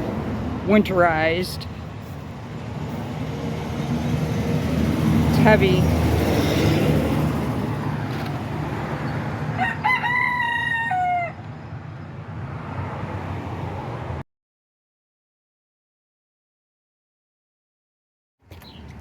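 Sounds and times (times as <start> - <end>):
rooster crowing: 9.5 - 11.7.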